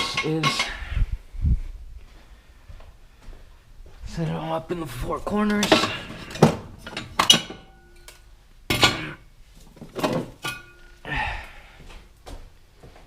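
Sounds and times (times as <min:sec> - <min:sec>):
metal jack stands clanking: 0:00.0 - 0:00.8, 0:05.4 - 0:09.2, 0:10.0 - 0:10.9.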